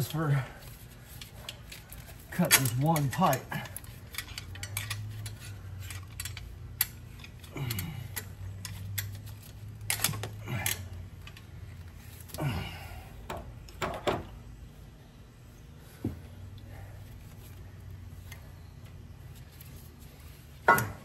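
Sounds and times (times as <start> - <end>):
low steady hum: 0.0 - 21.0
hand tools clinking on metal: 1.2 - 9.2.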